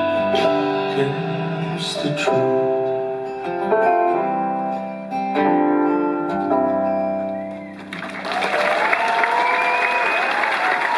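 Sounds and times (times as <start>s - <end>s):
rock guitar chords ringing: 0.0s - 7.9s
audience applause and cheering: 7.6s - 10.9s.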